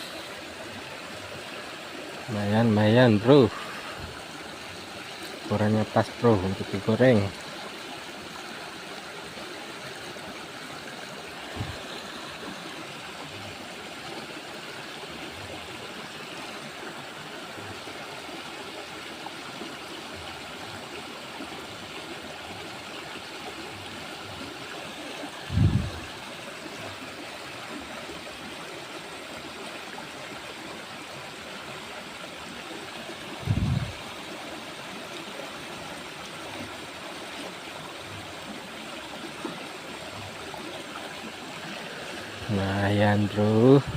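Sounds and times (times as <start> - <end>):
flowing water: 0.0 - 43.9
dull low thumps: 25.5 - 26.1, 33.4 - 34.0.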